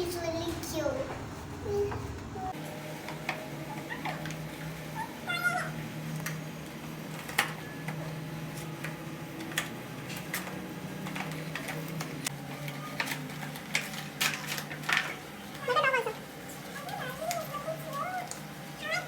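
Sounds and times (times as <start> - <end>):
packaging clicks and crackles: 8.8 - 15.7.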